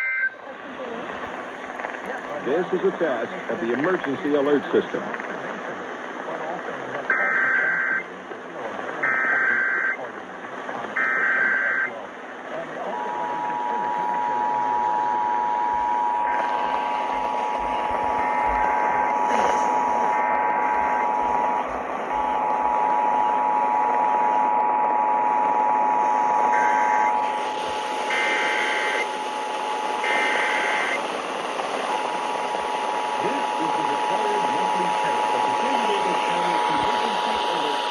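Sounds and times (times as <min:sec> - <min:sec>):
two-tone alert signal: 0:00.0 - 0:00.4
radio hiss: 0:00.0 - 0:37.9.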